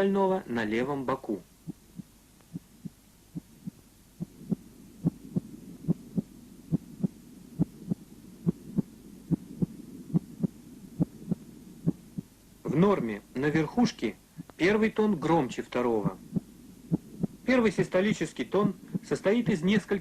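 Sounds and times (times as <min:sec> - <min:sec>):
faint low hum: 0:00.0 - 0:20.0
heartbeat through stethoscope: 0:01.6 - 0:12.4, 0:16.1 - 0:17.4.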